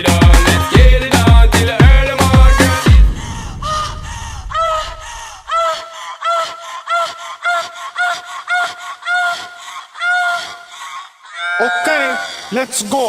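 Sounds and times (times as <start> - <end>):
low bass sound: 0.8 - 5.2.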